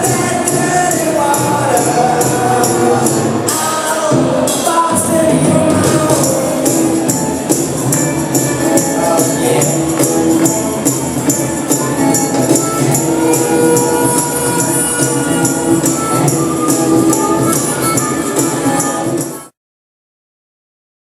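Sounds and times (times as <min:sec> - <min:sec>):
music with steady beat: 0:00.0 - 0:19.5
tambourine jingling: 0:05.6 - 0:19.5.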